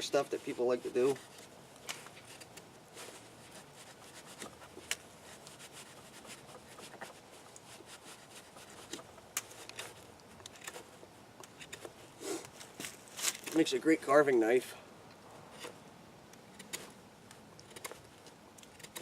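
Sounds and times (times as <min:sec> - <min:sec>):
knife scraping wood: 0:00.0 - 0:13.6.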